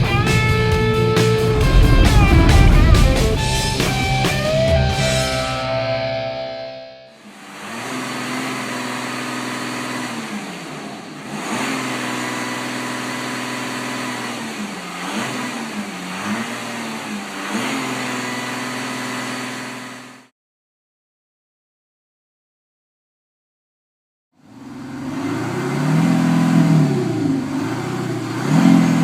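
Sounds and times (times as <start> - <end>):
car engine running: 0.0 - 5.3.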